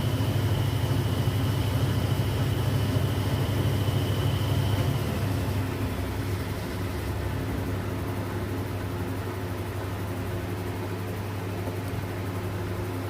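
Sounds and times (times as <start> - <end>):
machine humming: 0.0 - 9.3.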